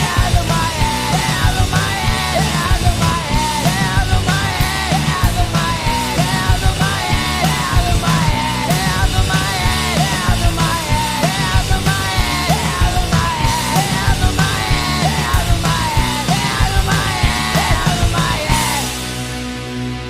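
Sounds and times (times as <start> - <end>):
rock band playing: 0.0 - 20.0.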